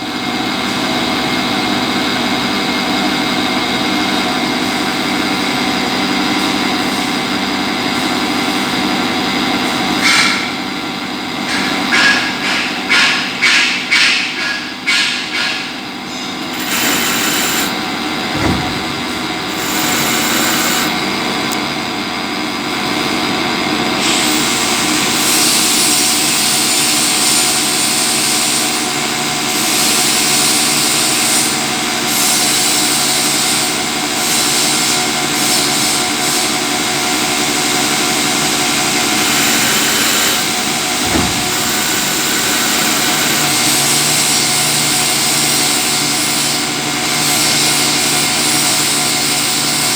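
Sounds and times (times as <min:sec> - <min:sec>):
lathe machine hum: 0:15.8 - 0:49.9
high cutting hiss: 0:16.5 - 0:17.8, 0:19.4 - 0:21.0
low thump: 0:18.3 - 0:20.9, 0:41.0 - 0:42.0.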